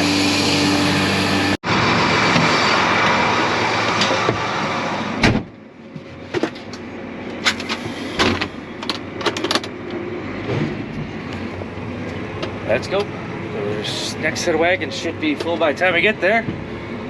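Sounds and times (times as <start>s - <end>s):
door shutting: 5.2s - 5.5s.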